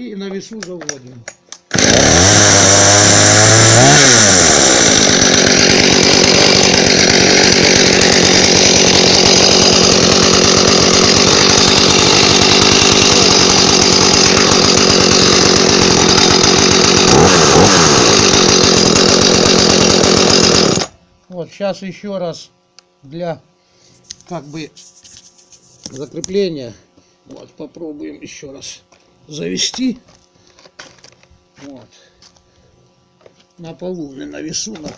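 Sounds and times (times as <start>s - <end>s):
chainsaw engine running: 0.8s - 21.0s, 33.0s - 34.9s.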